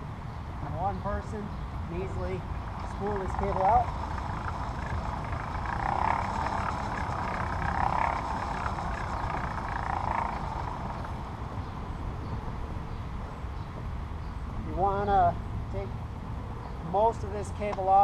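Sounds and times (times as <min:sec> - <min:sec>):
low rumble: 0:02.0 - 0:12.8
cable reel drum turning: 0:02.5 - 0:11.4.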